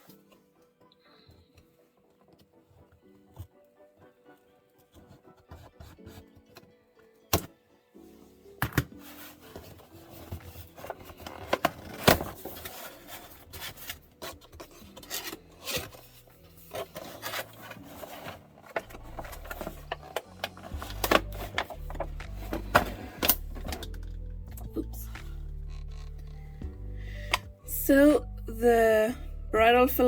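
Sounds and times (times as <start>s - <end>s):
low background music: 0.0s - 30.0s
cardboard box rubbing and scraping: 9.1s - 23.8s.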